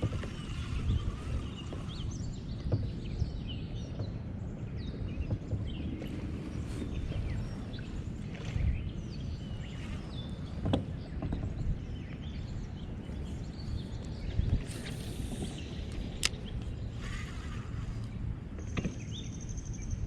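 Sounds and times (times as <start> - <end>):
wind and water rumble: 0.0 - 20.0.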